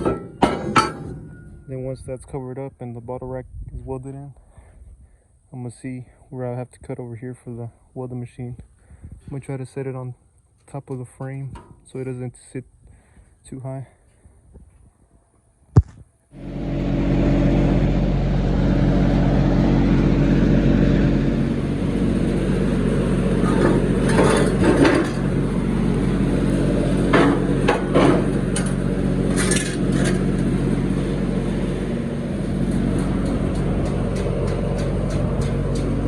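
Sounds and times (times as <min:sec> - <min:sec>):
engine-driven welder running: 0:16.4 - 0:36.0.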